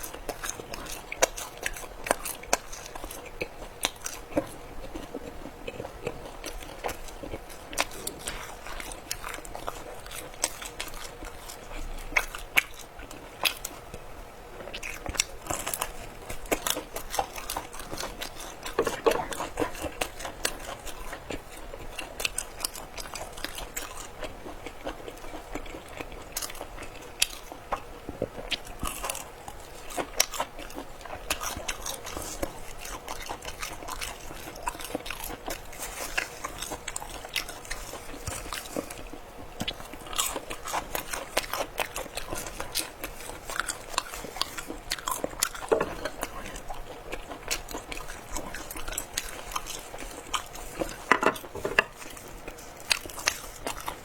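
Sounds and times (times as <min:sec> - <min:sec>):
crunching and chewing food: 0:00.0 - 0:54.0.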